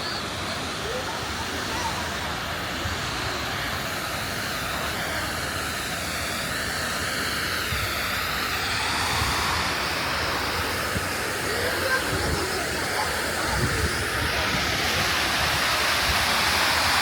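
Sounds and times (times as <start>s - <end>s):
rushing outdoor noise: 0.0s - 17.0s.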